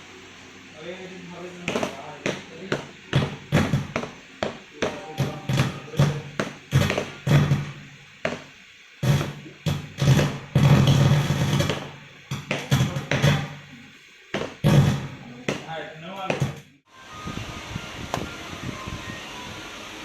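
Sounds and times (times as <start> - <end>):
electronic drum hits: 4.8 - 7.8.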